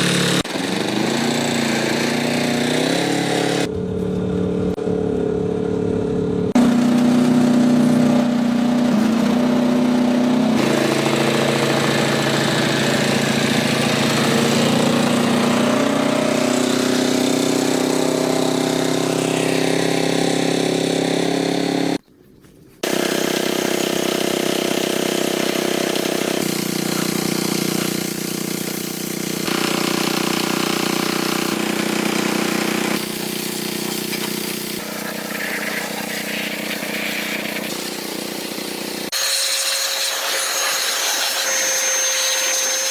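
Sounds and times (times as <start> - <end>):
motor humming: 22.9 - 42.9.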